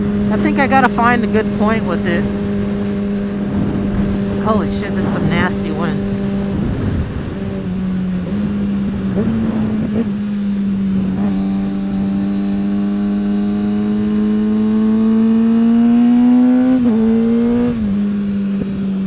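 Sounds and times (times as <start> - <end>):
motorcycle engine running: 0.0 - 19.0
wind noise rushing: 1.8 - 10.0.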